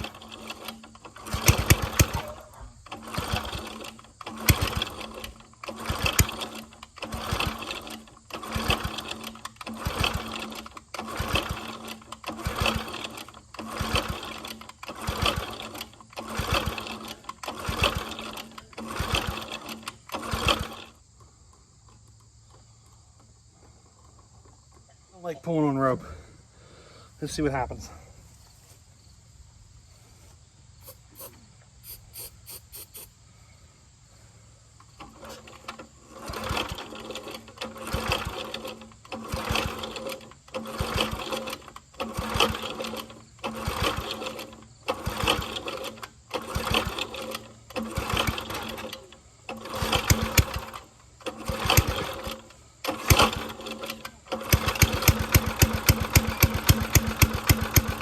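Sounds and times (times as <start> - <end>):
recoil rope pull-start: 0.0 - 21.3, 34.8 - 58.0
small engine running: 0.0 - 24.4, 30.2 - 33.5, 34.1 - 58.0
small gasoline engine sputtering: 0.0 - 25.1, 30.8 - 33.2, 34.1 - 58.0.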